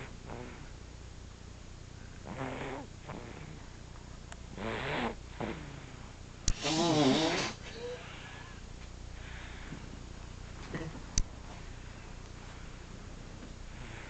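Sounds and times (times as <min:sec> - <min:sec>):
rattling snores: 0:00.0 - 0:00.7, 0:02.2 - 0:03.6, 0:04.5 - 0:05.9, 0:06.5 - 0:07.8.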